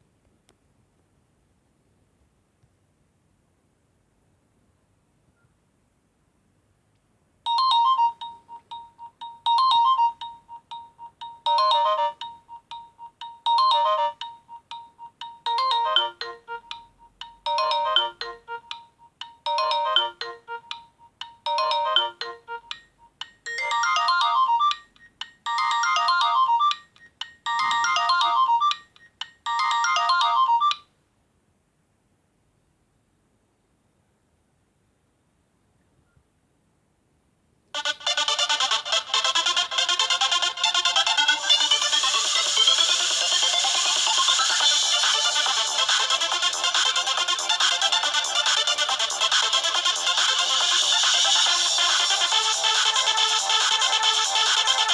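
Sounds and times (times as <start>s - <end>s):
mobile phone ringtone melody: 7.5s - 30.9s, 37.8s - 54.9s.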